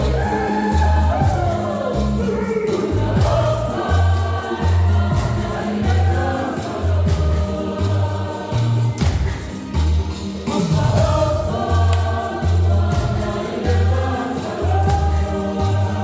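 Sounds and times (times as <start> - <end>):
choir singing: 0.0 - 16.0
pulsing bass line: 0.0 - 16.0
sharp percussion hits: 0.0 - 16.0.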